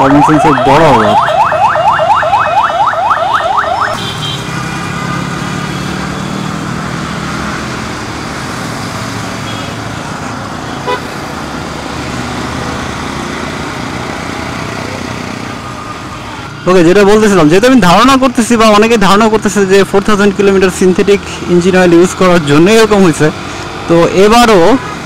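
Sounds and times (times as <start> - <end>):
car alarm rising chirps: 0.0 - 4.0
road traffic noise: 0.0 - 25.0.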